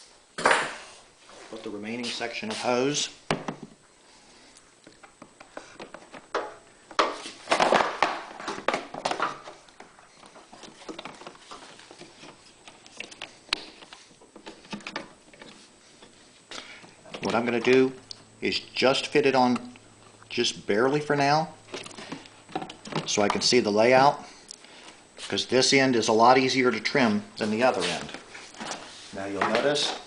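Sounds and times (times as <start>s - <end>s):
rubber hose rustling and clicking: 4.8s - 16.2s.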